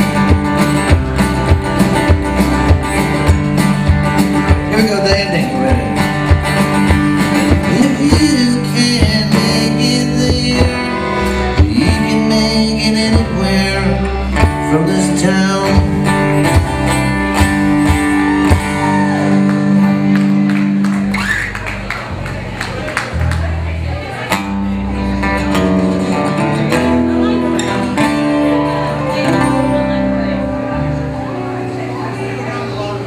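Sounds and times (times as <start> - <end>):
bass guitar: 0.0 - 33.0
electric guitars bending notes: 0.0 - 33.0
drum hits: 0.1 - 9.4.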